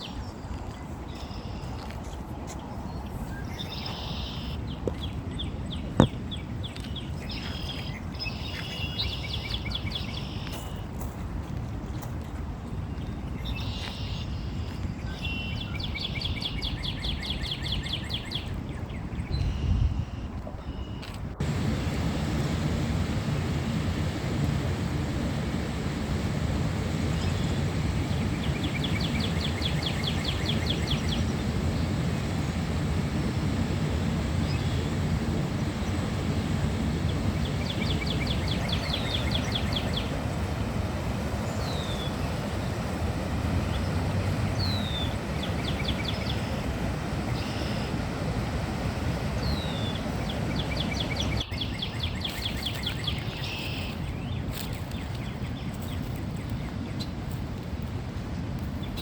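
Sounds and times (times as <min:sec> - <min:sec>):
songbird trills: 0:01.1 - 0:01.8, 0:03.3 - 0:10.9, 0:13.0 - 0:21.6, 0:26.9 - 0:40.7, 0:43.7 - 0:48.0, 0:49.4 - 0:56.1
low background rumble: 0:21.3 - 0:51.4.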